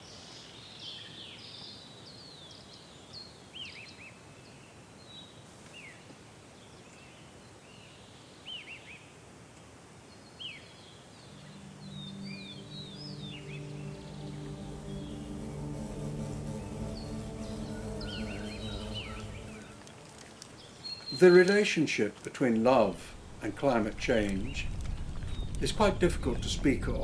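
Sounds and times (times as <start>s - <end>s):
outdoor background hiss: 0.0s - 27.0s
soft music: 11.2s - 21.6s
birds chirping: 11.2s - 27.0s.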